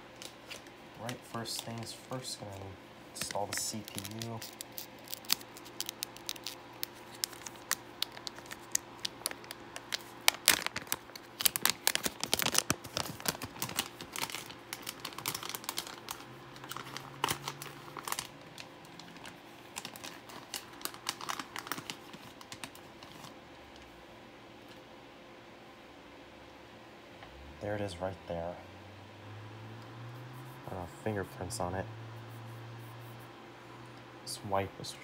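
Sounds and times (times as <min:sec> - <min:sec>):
plastic packaging crinkling: 0:03.2 - 0:23.4.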